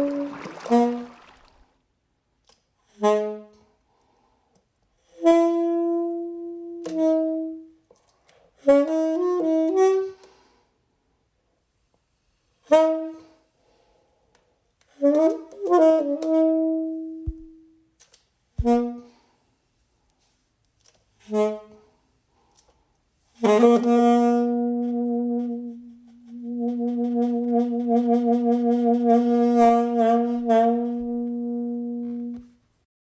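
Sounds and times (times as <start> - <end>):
solo saxophone melody: 0.0 - 1.6, 2.9 - 3.8, 5.0 - 7.9, 8.6 - 10.5, 12.7 - 13.5, 14.8 - 17.9, 18.6 - 19.4, 21.2 - 22.1, 23.4 - 32.7.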